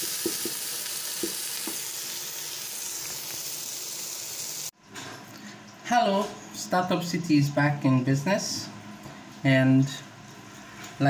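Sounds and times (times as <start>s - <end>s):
vegetables sizzling in oil: 0.0s - 4.7s.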